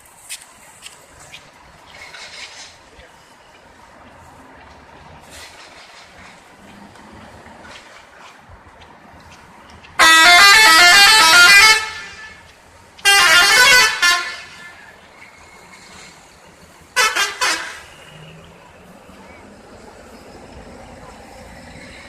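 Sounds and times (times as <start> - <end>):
musical bus horn melody: 10.0 - 14.8, 17.0 - 18.4.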